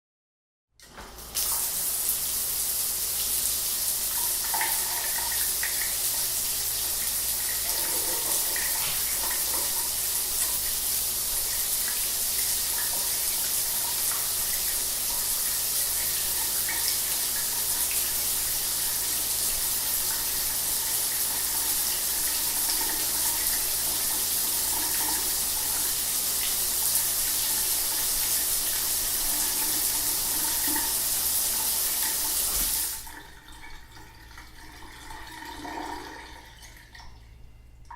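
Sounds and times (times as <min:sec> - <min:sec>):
shower spray hitting floor: 0:07.7 - 0:10.6, 0:31.5 - 0:33.0.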